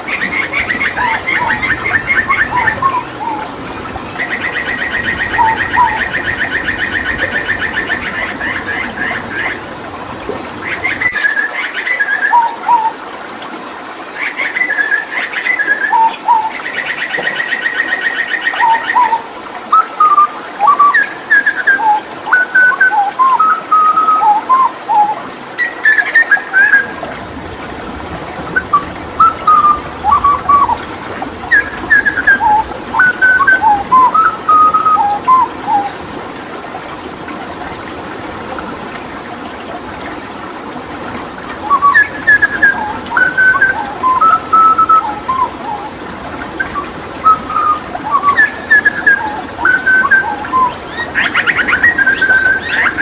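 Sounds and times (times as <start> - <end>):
running water: 0.0 - 53.0
bird singing whistled notes: 0.4 - 3.4, 4.2 - 8.2, 17.2 - 26.9, 28.6 - 30.8, 31.5 - 35.9, 41.6 - 45.9, 46.6 - 53.0.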